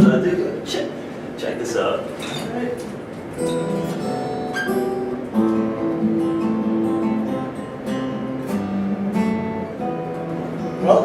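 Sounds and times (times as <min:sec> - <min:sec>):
instrument playing notes over chords: 0:03.4 - 0:10.8.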